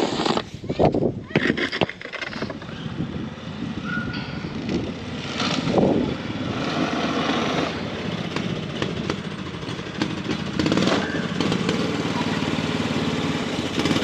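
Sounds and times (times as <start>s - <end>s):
small snowmobile engine running: 4.7s - 14.0s.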